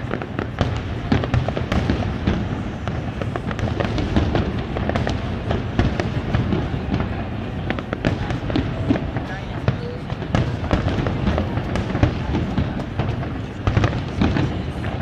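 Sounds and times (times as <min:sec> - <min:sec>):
fireworks bangs and crackles: 0:00.0 - 0:15.0.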